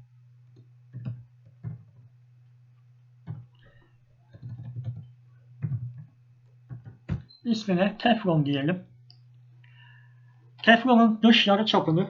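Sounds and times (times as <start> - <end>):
low electrical hum: 0.0 - 12.0
keyboard taps: 0.9 - 2.0, 3.3 - 3.5, 4.3 - 6.1, 6.7 - 7.3.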